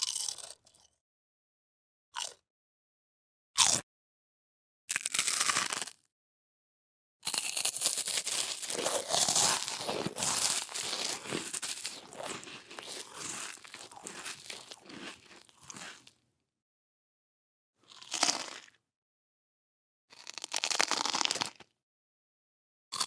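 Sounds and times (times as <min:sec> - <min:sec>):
person chewing crunchy food: 0:00.0 - 0:00.9, 0:03.6 - 0:03.8, 0:04.9 - 0:06.0, 0:07.2 - 0:16.2, 0:17.8 - 0:18.8, 0:20.1 - 0:21.7.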